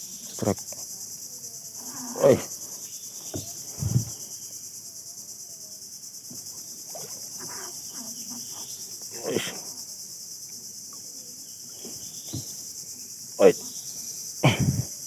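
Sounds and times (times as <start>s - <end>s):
insects chorus pulsing: 0.0s - 15.0s
faint voices: 0.2s - 4.2s, 6.9s - 9.8s.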